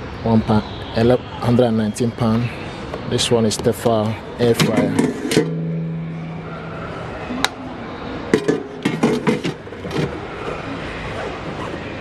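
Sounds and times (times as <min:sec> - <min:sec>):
steady background hum: 0:00.0 - 0:12.0
hard objects knocking and clinking: 0:08.3 - 0:10.1.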